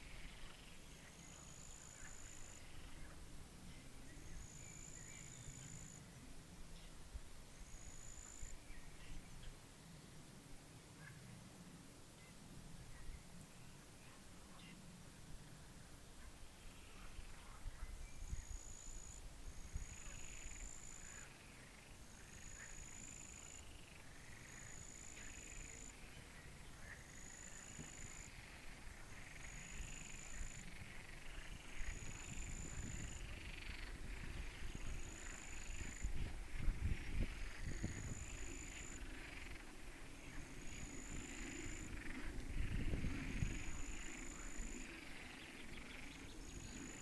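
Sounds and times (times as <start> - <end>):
wind rumble on microphone: 14.8 - 20.6, 27.8 - 47.0
frogs calling: 16.8 - 47.0.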